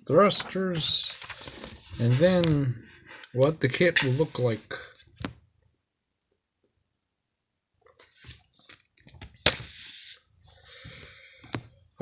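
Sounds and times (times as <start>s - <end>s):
paper rustling: 0.3s - 4.6s, 8.0s - 10.2s.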